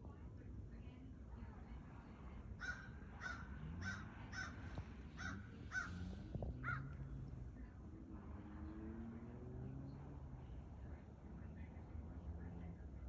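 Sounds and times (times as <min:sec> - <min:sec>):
crow cawing: 0:02.6 - 0:06.0, 0:06.6 - 0:06.9.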